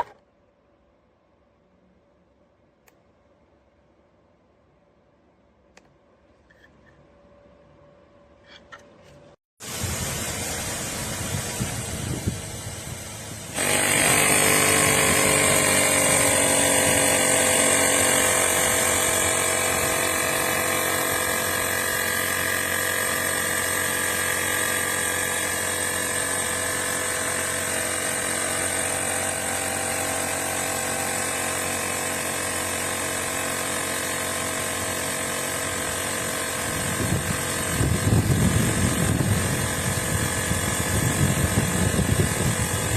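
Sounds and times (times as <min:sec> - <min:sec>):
tire inflator compressor running: 0:09.6 - 0:42.9.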